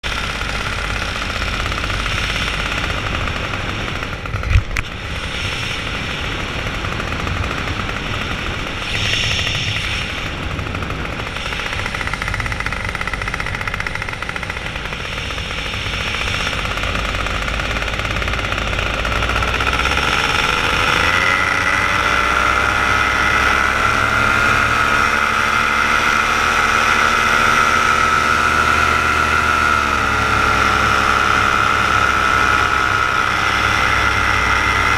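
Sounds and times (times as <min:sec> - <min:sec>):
paramotor engine and propeller: 0:00.0 - 0:34.9
sharp engine knock: 0:06.8 - 0:22.4.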